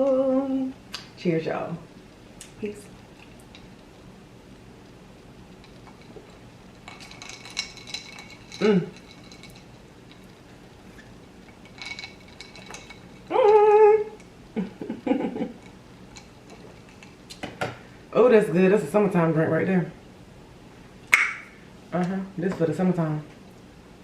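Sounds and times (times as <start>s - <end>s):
woman humming mmm: 0.0s - 0.8s, 8.6s - 9.0s, 13.3s - 14.9s
woman murmuring: 13.3s - 15.4s.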